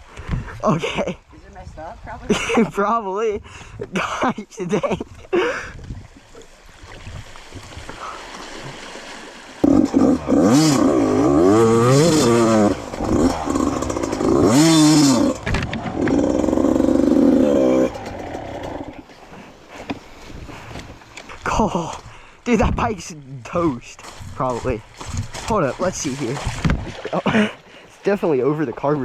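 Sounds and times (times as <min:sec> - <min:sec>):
dirt bike engine revving: 0:09.6 - 0:19.0.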